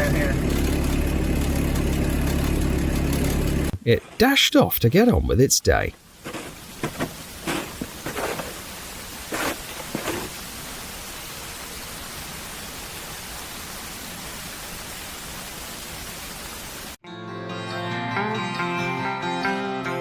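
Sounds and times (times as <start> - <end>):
steady static hiss: 0.0 - 17.0
plucked-string music: 17.0 - 20.0.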